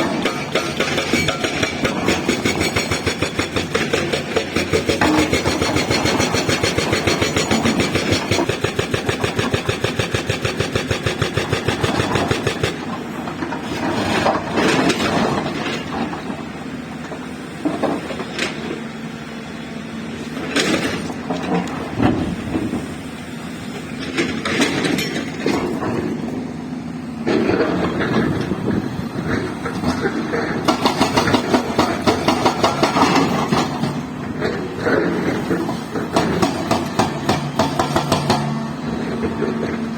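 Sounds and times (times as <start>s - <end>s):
hydraulic rock breaker hammering: 0.0s - 18.8s, 27.2s - 39.9s
diesel engine running: 0.0s - 39.9s.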